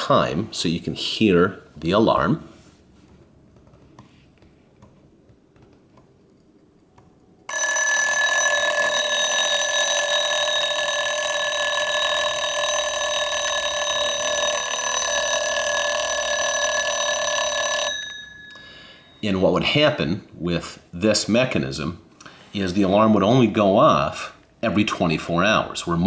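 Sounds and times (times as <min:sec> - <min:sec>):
alarm clock bell ringing: 0:07.5 - 0:19.6.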